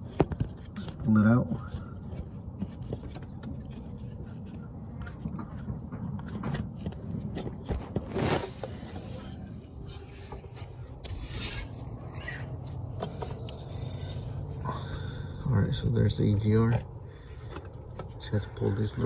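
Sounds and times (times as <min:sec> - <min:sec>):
hands rubbing and scraping hose: 0:00.0 - 0:11.7.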